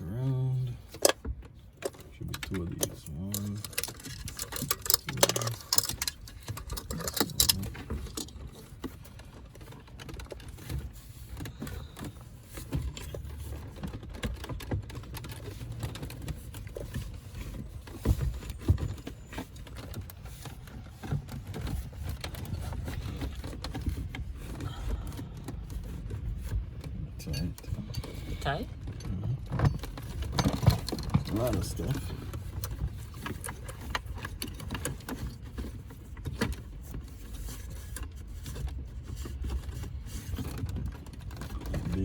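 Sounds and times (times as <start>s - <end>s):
wiring rustling: 0.0s - 42.0s
plastic connectors clicking and knocking: 0.9s - 10.7s.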